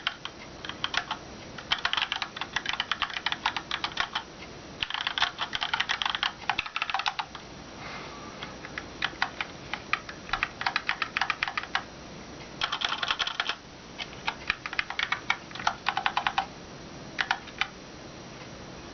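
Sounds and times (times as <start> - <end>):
mechanical keyboard typing: 0.0 - 7.4, 8.7 - 11.9, 12.6 - 16.5, 17.2 - 17.7.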